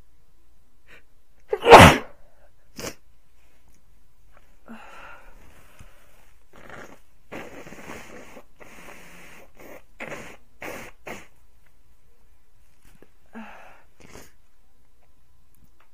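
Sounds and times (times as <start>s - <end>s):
person blowing nose: 1.5s - 2.1s, 2.8s - 3.0s, 6.5s - 11.4s, 14.0s - 14.4s.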